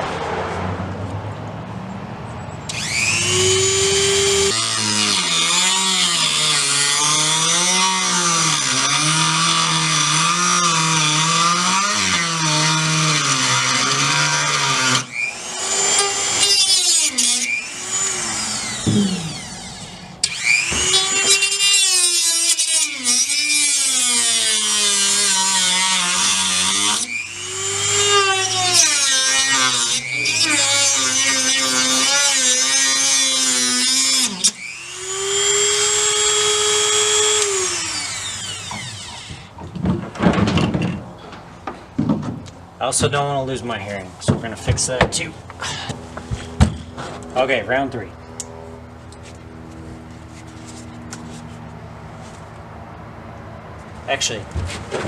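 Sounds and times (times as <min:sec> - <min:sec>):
rotary tool cutting whine: 0:02.7 - 0:39.7.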